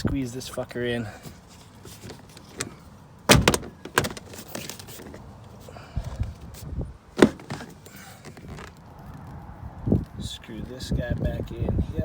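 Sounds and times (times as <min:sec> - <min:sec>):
trim panel clips knocking: 0:03.3 - 0:04.4.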